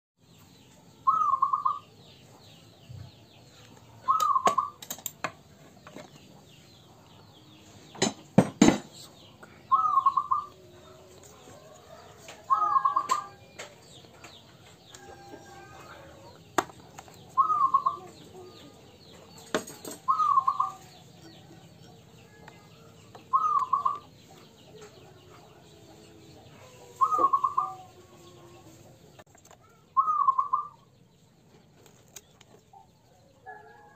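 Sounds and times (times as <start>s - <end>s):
dove cooing: 1.0s - 1.9s, 4.0s - 4.8s, 9.7s - 11.1s, 11.9s - 13.4s, 17.4s - 18.7s, 20.1s - 20.9s, 23.3s - 24.1s, 26.7s - 28.6s, 30.0s - 30.8s
sharp knocks: 8.0s - 9.0s.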